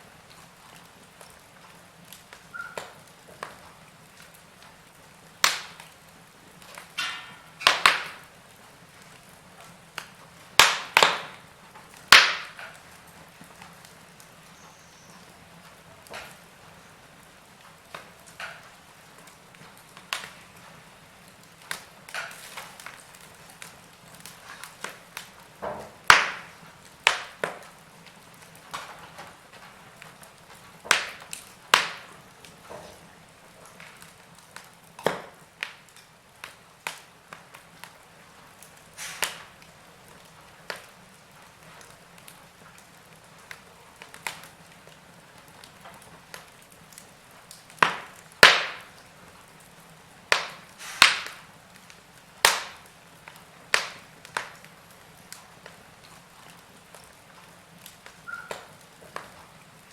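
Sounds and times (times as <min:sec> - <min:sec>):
faint steady hiss: 0:00.0 - 0:59.9
logs crackling in fireplace: 0:00.0 - 0:59.9.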